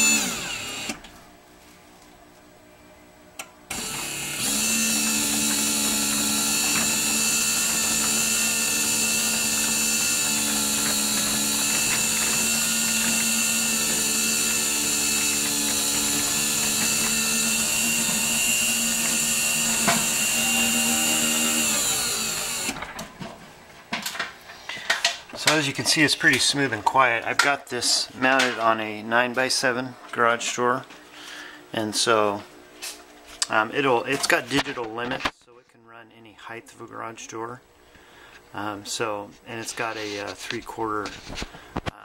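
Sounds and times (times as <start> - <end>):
garage door opener humming: 0.0 - 1.2, 3.3 - 23.3.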